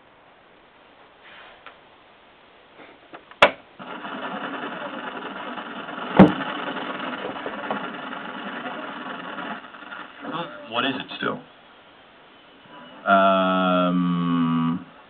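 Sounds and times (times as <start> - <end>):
radio static hiss: 3.8 - 13.4
loud pop from radio speaker: 6.2 - 6.5.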